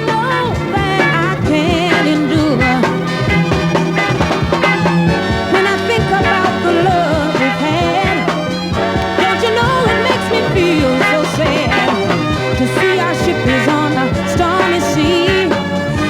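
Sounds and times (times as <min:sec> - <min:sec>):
upbeat soul record playing: 0:00.0 - 0:16.0.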